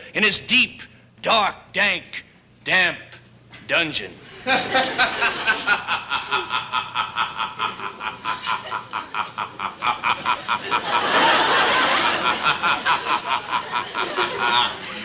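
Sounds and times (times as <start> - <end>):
man cackling: 5.4 - 15.0.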